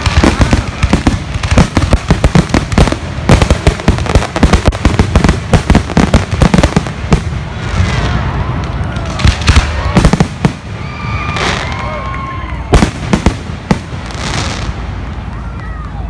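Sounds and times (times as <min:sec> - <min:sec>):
fireworks bangs and crackling: 0:00.0 - 0:16.0.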